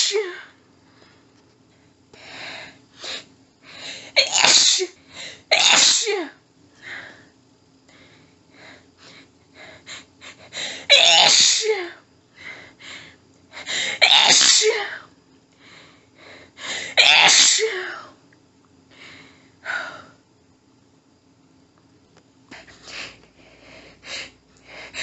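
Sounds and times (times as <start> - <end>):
woman sneezing: 0.0 - 0.5, 4.1 - 6.4, 10.8 - 12.0, 13.8 - 15.0, 16.9 - 18.1.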